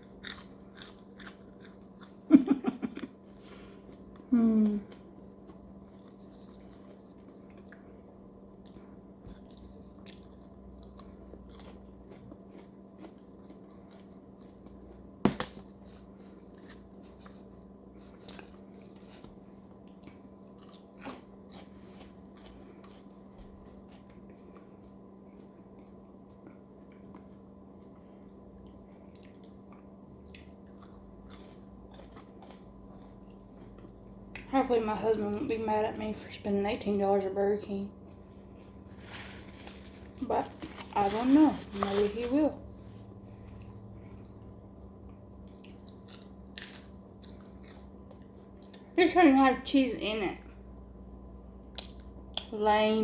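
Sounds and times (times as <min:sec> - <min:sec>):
person chewing crunchy food: 0:00.0 - 0:34.5, 0:38.0 - 0:49.0
steady low hum: 0:00.0 - 0:53.0.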